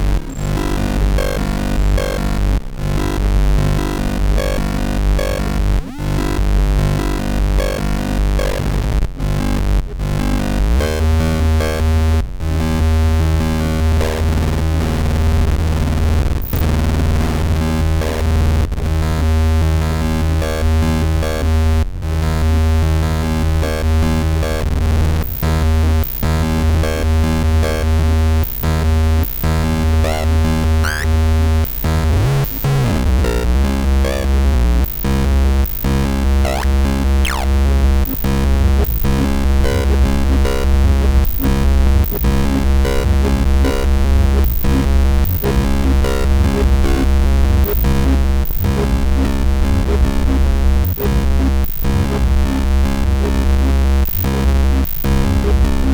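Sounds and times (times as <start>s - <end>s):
electronic noise music drone: 0.0s - 9.0s, 10.0s - 18.4s, 22.4s - 55.9s.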